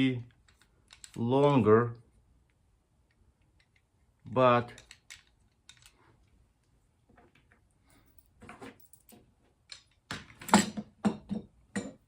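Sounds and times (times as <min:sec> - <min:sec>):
small metal hardware clicking: 0:00.4 - 0:01.2.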